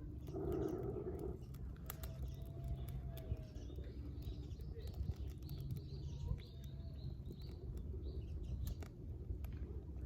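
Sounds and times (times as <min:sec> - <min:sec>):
campfire crackling and popping: 0:00.0 - 0:08.0
small birds chirping: 0:00.0 - 0:10.0
steady low rumble: 0:00.0 - 0:10.0.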